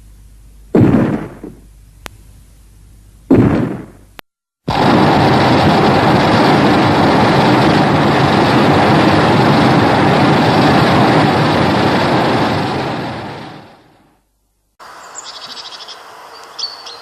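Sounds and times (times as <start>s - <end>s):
loud steady rushing noise: 4.7s - 14.0s.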